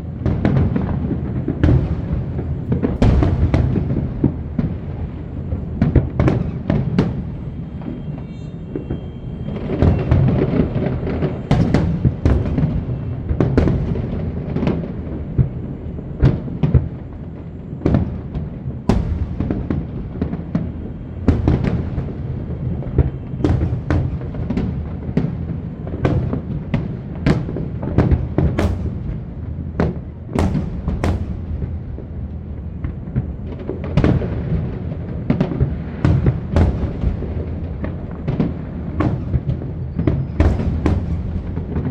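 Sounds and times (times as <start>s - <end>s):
fireworks shells bursting: 28.5s - 29.4s, 30.4s - 31.8s.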